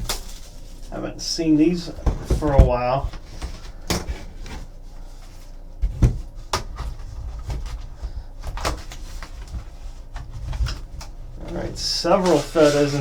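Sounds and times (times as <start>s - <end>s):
cardboard knocking and scraping on table: 2.0s - 4.7s, 5.8s - 13.0s.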